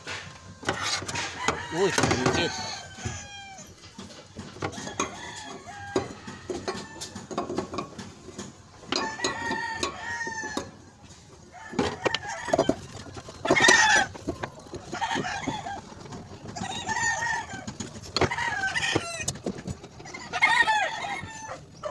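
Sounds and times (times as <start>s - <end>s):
chickens clucking: 0.0s - 21.9s
rooster crowing: 1.1s - 3.8s, 4.6s - 7.4s, 8.9s - 10.8s, 11.4s - 14.1s, 16.6s - 19.3s, 20.0s - 21.9s.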